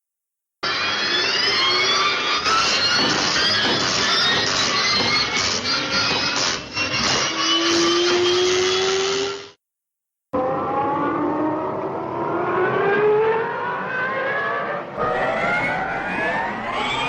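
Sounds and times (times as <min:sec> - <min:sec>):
cartoon motor speeding up: 0:07.4 - 0:09.6.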